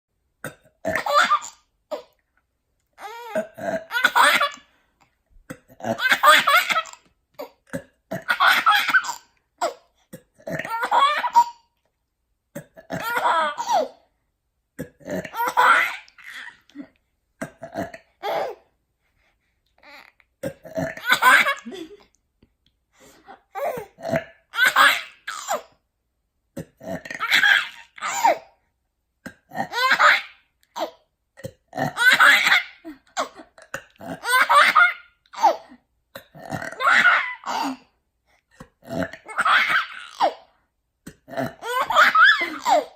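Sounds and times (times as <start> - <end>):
baby burping: 0.4 - 2.2, 3.0 - 4.7, 5.4 - 11.6, 12.5 - 14.1, 14.8 - 18.7, 19.8 - 21.8, 23.5 - 25.8, 26.6 - 28.6, 29.2 - 37.9, 38.6 - 42.9
baby laughing: 0.9 - 2.2, 3.0 - 4.7, 5.8 - 7.6, 8.2 - 9.9, 10.6 - 11.7, 13.0 - 14.0, 15.3 - 16.9, 18.2 - 18.7, 20.9 - 22.1, 23.4 - 25.7, 27.2 - 28.5, 29.6 - 31.0, 31.8 - 35.8, 36.8 - 37.9, 39.2 - 40.5, 41.6 - 42.9.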